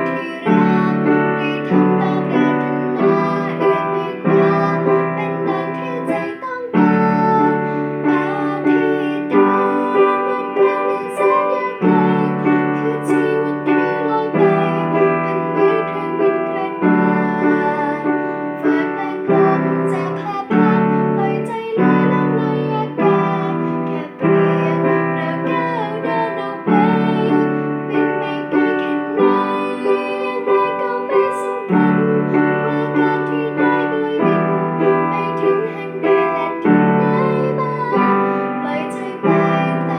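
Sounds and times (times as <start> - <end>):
piano ballad chords: 0.0 - 39.9
young woman singing: 0.0 - 39.9.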